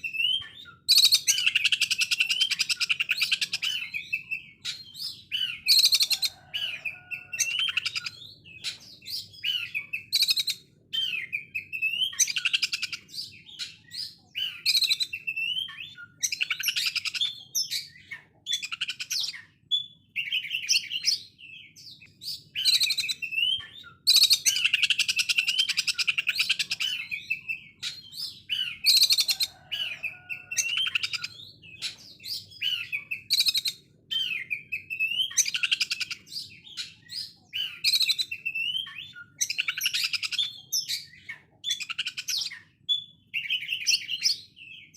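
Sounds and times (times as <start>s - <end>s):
bird singing rattling song: 0.0s - 44.9s.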